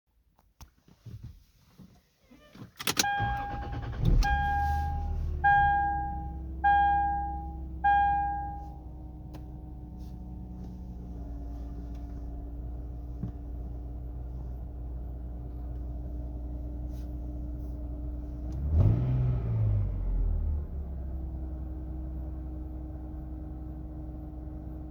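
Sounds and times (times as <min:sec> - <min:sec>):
car engine idling with whine: 0:02.2 - 0:24.9
warning chime: 0:03.0 - 0:08.8
engine revving: 0:03.1 - 0:08.0, 0:18.5 - 0:21.0.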